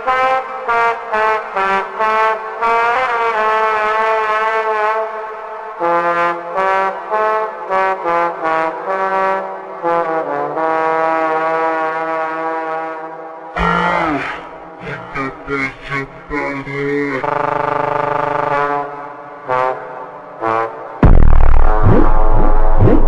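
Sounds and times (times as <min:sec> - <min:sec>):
brass horns playing melody: 0:05.8 - 0:13.2
bass line: 0:13.6 - 0:17.8, 0:21.0 - 0:23.0.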